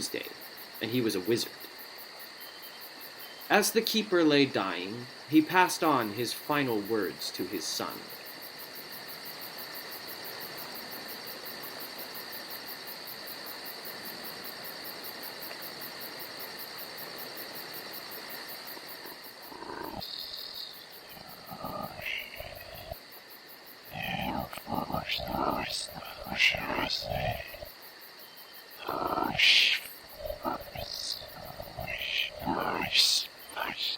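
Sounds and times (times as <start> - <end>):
crickets chirring: 0.0 - 33.9
short voice-like sounds: 23.9 - 27.7, 28.8 - 33.9.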